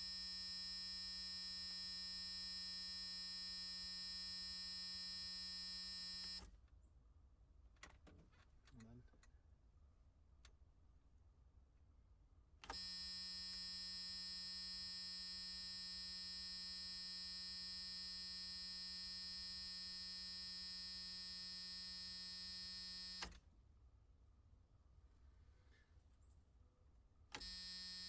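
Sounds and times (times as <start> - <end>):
electric buzzer: 0.0 - 6.5, 12.6 - 23.4, 27.3 - 28.0.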